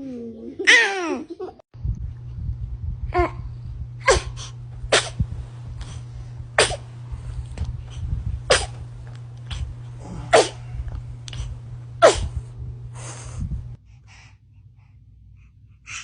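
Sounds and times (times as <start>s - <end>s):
low steady hum: 0.0s - 16.0s
baby sneezing: 4.0s - 5.2s, 6.6s - 6.8s, 8.5s - 8.8s, 10.3s - 10.6s, 12.0s - 12.3s.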